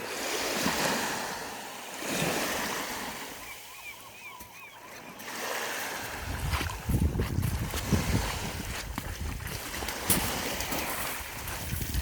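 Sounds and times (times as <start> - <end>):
sea waves washing on shore: 0.0 - 12.0
faint warbling calls: 3.4 - 5.2.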